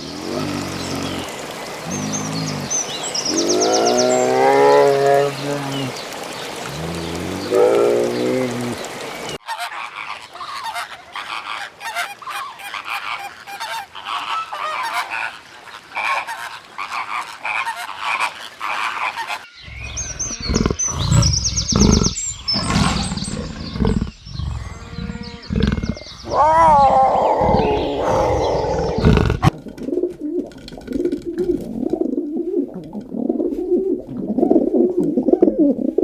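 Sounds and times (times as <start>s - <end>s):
geese honking: 9.4s - 19.5s.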